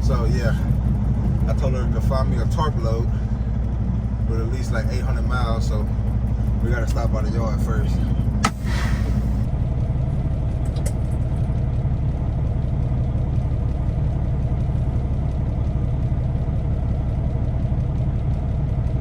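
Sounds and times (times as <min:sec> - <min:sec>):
man talking: 0:00.0 - 0:00.8, 0:01.5 - 0:03.3, 0:04.2 - 0:05.9, 0:06.6 - 0:08.1
diesel truck engine rumbling: 0:00.0 - 0:19.0.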